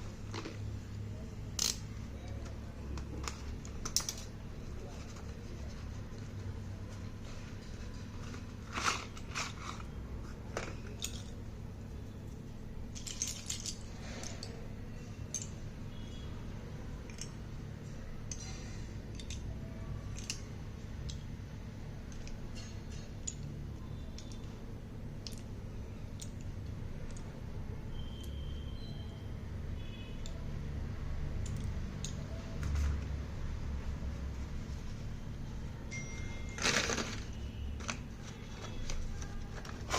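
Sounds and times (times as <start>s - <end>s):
pencils clicking and clinking: 1.5s - 6.3s, 7.3s - 11.5s, 12.8s - 16.1s, 17.0s - 21.3s, 22.0s - 24.6s, 35.9s - 39.9s.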